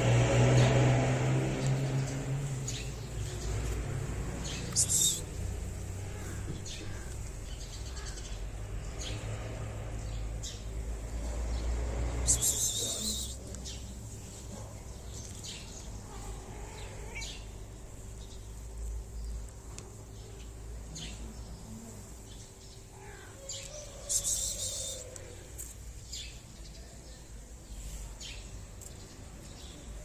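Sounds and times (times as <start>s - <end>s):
small birds chirping: 0.5s - 30.0s.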